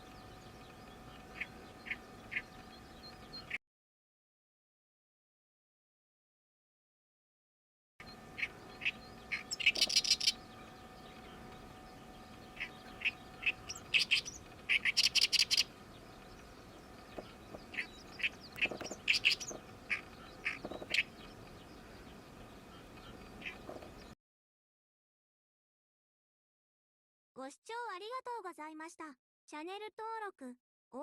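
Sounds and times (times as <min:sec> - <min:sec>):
reed warbler singing: 0:00.0 - 0:03.6, 0:08.0 - 0:24.2.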